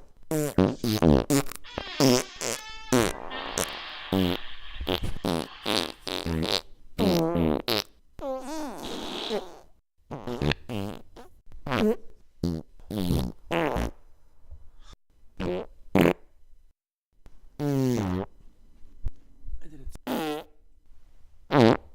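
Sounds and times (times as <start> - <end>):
farts: 0.3 - 14.0, 15.4 - 16.2, 17.6 - 18.3, 20.1 - 20.6, 21.5 - 21.9.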